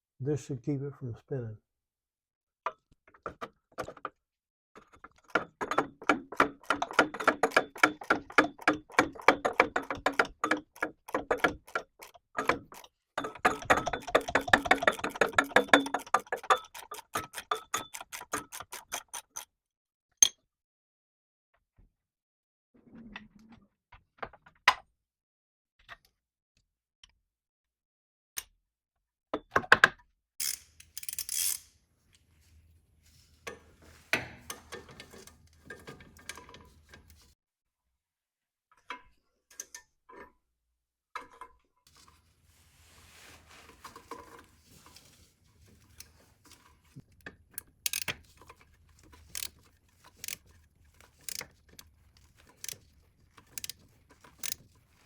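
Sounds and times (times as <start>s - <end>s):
tools clanking against metal: 5.6s - 18.5s, 33.4s - 37.2s, 45.8s - 54.8s
hand ratchet clicking: 6.1s - 19.4s, 30.4s - 31.7s, 47.5s - 54.8s.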